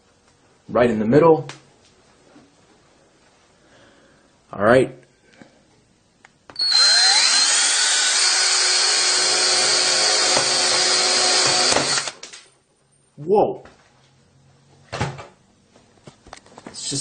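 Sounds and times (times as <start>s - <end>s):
drill whining: 6.6s - 12.3s.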